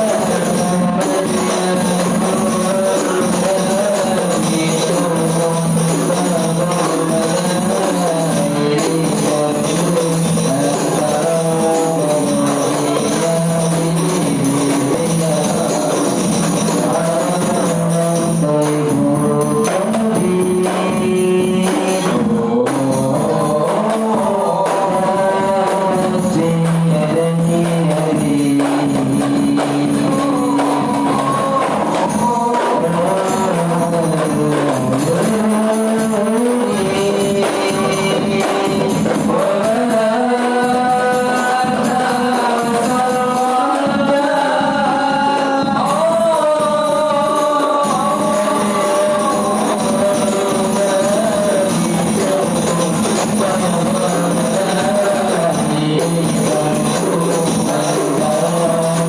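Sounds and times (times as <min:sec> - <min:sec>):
frame drums beating: 0:00.0 - 0:59.0
voices singing together: 0:00.0 - 0:59.0.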